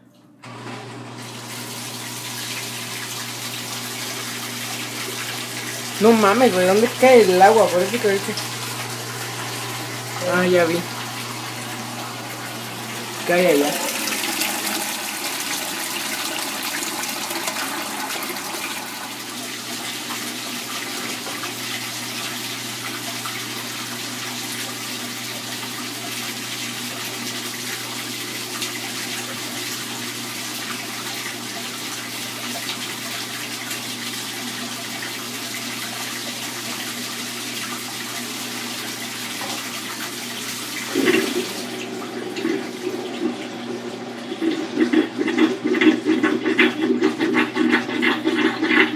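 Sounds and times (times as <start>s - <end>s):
uneven washer sounds: 0.0s - 48.9s
water pouring into washer tub: 0.0s - 48.9s.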